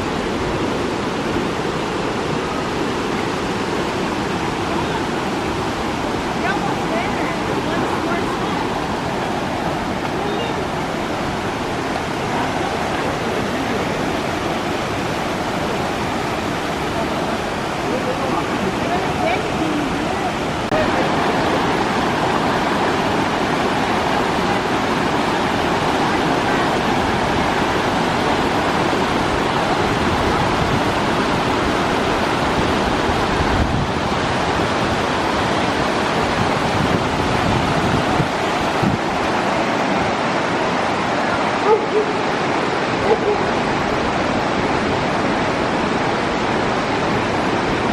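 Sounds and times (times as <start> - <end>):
waterfall and rapids rushing: 0.0 - 47.9.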